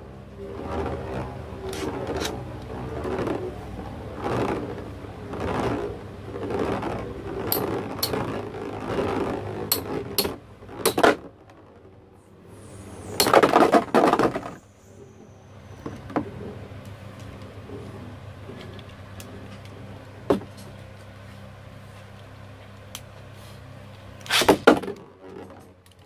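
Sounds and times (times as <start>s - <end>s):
spinning tops whirring: 0.4s - 11.0s.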